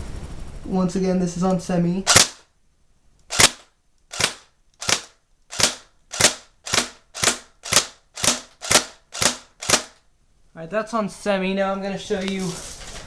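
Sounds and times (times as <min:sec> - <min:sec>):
airsoft rifle shots: 0:02.0 - 0:02.5, 0:03.3 - 0:10.0.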